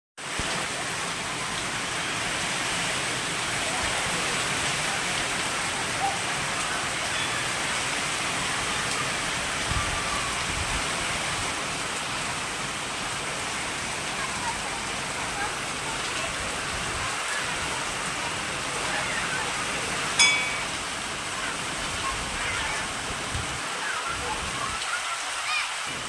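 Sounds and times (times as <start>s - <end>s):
rain pattering: 0.2s - 26.0s.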